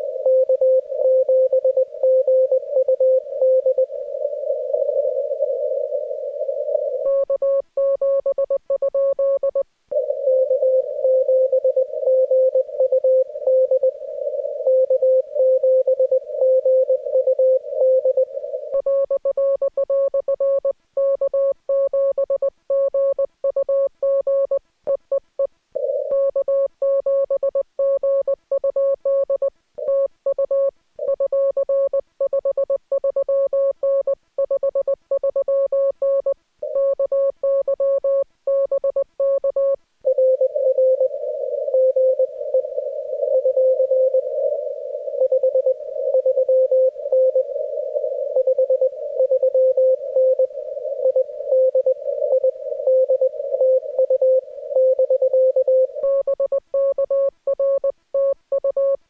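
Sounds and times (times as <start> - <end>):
morse code tone: 48.4 - 59.0.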